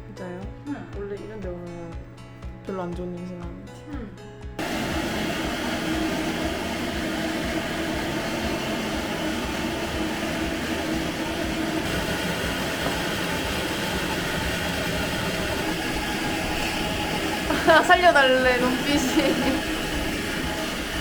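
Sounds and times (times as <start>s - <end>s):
pet blow dryer blowing air: 4.6s - 21.0s.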